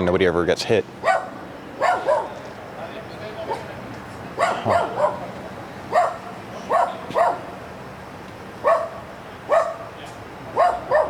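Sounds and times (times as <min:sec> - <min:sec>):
dog barking: 0:01.0 - 0:02.4, 0:03.5 - 0:03.7, 0:04.4 - 0:05.2, 0:05.9 - 0:07.5, 0:08.6 - 0:09.9, 0:10.6 - 0:11.0.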